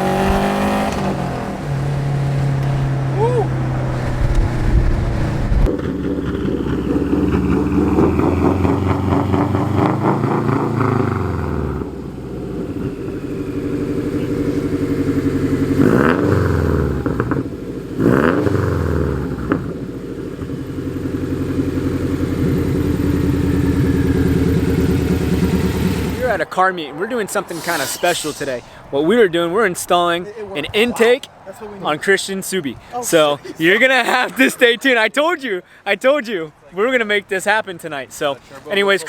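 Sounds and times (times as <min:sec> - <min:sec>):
car engine revving: 0:00.0 - 0:29.2.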